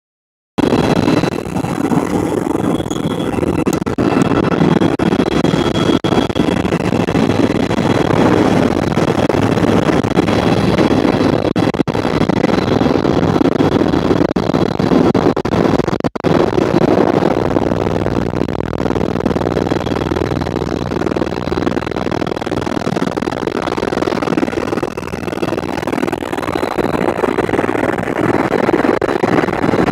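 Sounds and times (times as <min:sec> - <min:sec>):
helicopter engine and rotor drone: 0:00.6 - 0:29.9.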